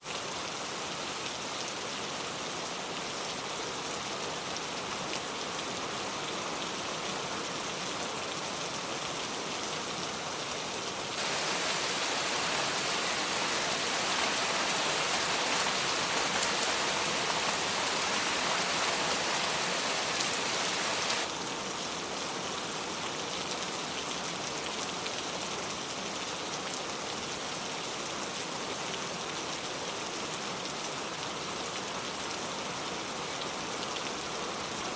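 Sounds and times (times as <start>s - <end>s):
rain falling: 11.1s - 22.2s.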